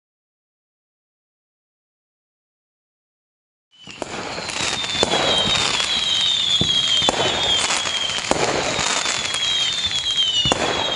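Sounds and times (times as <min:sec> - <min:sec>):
falling firework whistles: 0:03.7 - 0:10.9
fireworks crackling and banging: 0:03.8 - 0:10.9.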